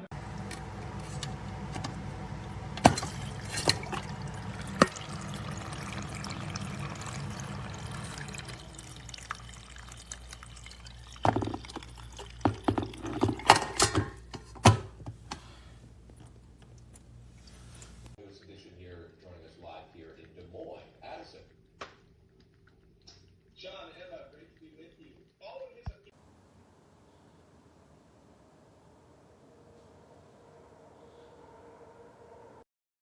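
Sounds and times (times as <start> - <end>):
low steady hum: 0.0 - 32.6
water pouring in a fountain: 0.1 - 13.6.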